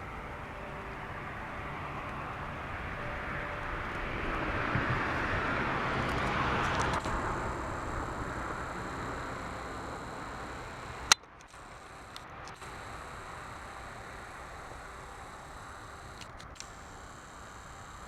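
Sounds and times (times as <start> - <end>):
passing vehicle rumble: 0.0 - 14.2.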